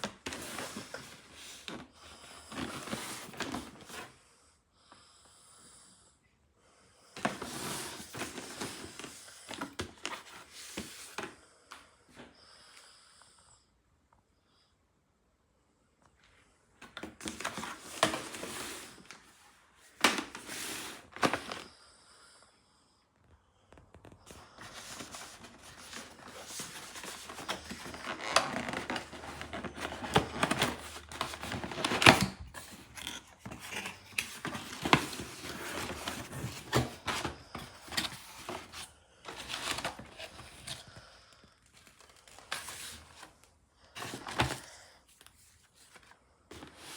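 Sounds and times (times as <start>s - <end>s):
packaging rustling and tearing: 16.8s - 21.7s, 23.8s - 41.0s, 41.7s - 43.4s.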